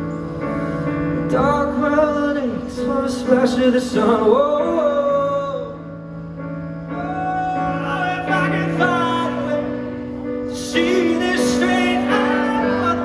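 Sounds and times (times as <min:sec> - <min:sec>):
person singing wordless notes: 0:07.0 - 0:13.0.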